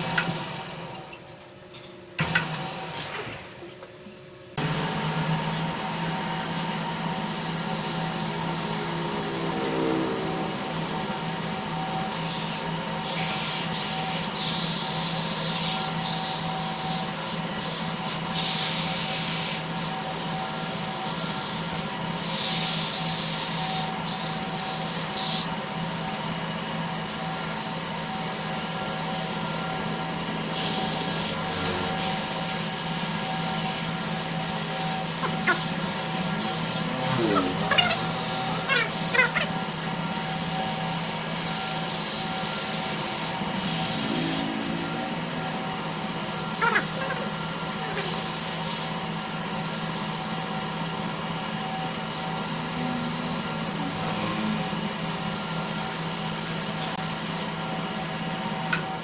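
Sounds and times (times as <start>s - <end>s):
lathe motor hum: 4.6s - 14.4s, 29.0s - 48.7s
sandpaper hissing on spinning wood: 7.2s - 26.2s, 26.8s - 44.5s, 45.6s - 51.3s.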